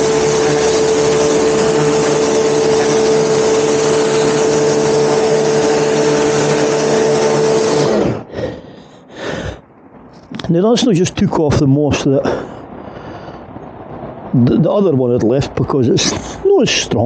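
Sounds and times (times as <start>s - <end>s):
water jet hissing: 0.0s - 8.3s
pressure washer motor whine: 0.0s - 8.5s.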